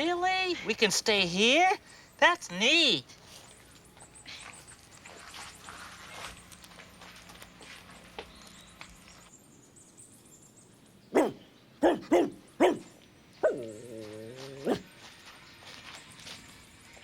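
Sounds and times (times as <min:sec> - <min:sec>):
dog barking: 0:11.1 - 0:13.7, 0:14.6 - 0:14.9
dog whining bark: 0:11.1 - 0:14.9.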